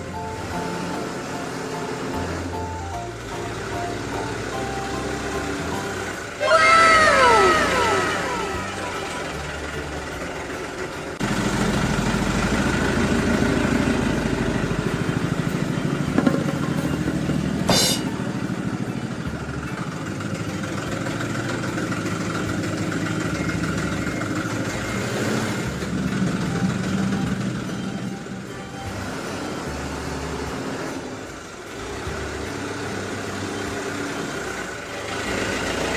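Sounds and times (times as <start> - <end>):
toy truck engine running: 0.0 - 17.6, 18.5 - 35.9
short sharp clank: 17.7 - 18.2.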